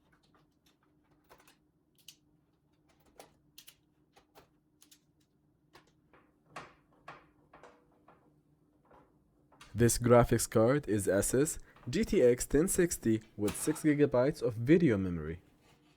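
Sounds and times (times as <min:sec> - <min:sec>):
computer parts clicking and tapping: 0:00.0 - 0:08.2, 0:11.3 - 0:14.3.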